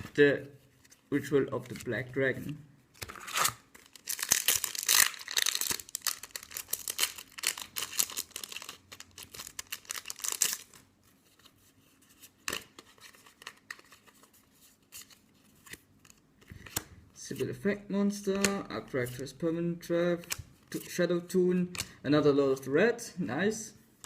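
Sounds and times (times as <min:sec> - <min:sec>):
foil wrapper tearing and crinkling: 0:03.2 - 0:10.8.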